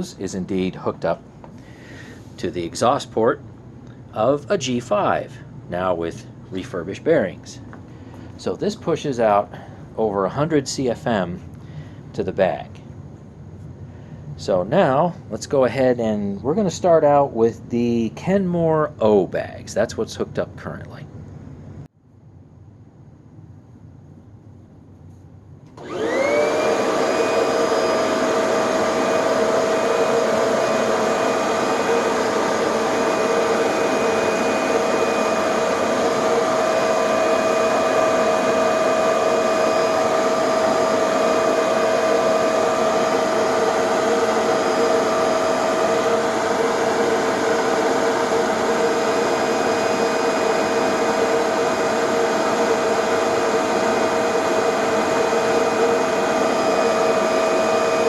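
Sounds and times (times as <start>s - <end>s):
vacuum motor whining: 25.7s - 58.0s.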